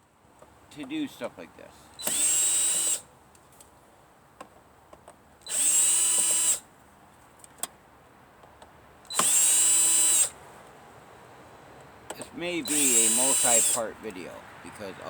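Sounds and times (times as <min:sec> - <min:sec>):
electric drill-driver whirring: 0:02.0 - 0:03.1, 0:05.4 - 0:06.6, 0:09.1 - 0:10.4, 0:12.6 - 0:13.9.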